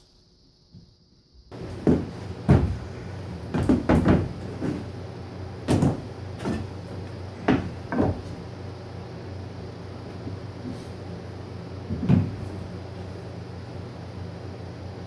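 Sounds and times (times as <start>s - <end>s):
wooden knocks and clunks: 1.5s - 5.0s, 5.7s - 8.4s, 11.9s - 12.6s
low steady hum: 1.5s - 15.0s.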